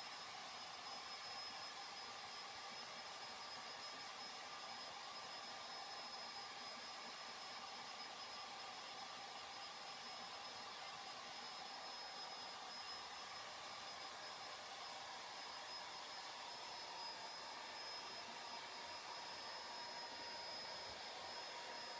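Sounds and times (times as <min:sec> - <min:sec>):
hair dryer running: 0:10.4 - 0:21.9.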